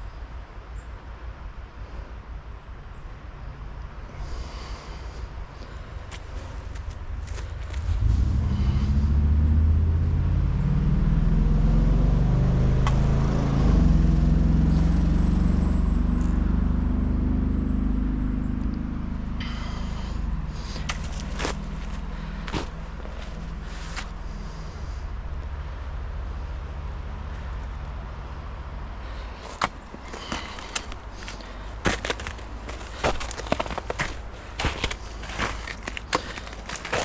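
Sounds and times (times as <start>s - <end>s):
vehicle engine passing: 7.3s - 25.1s, 28.4s - 37.0s
sharp scrapes and clicks: 29.4s - 37.0s.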